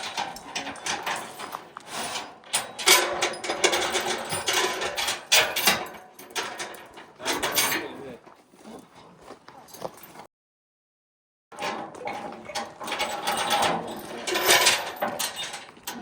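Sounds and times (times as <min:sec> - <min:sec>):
metal gear knocking and clanking: 0:00.0 - 0:01.6, 0:02.2 - 0:07.9, 0:11.6 - 0:16.0.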